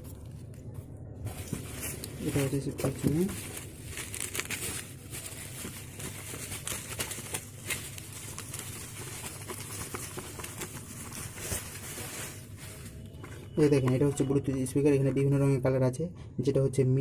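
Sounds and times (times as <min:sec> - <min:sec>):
packaging rustling and clicking: 0:01.3 - 0:14.3.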